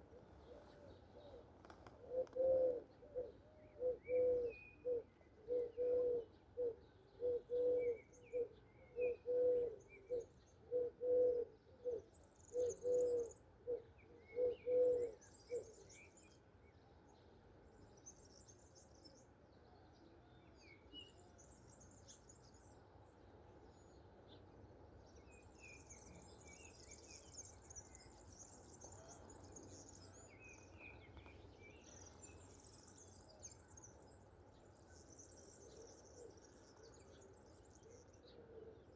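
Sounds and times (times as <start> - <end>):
dove cooing: 0.0 - 15.7
songbirds chirping: 0.0 - 38.9.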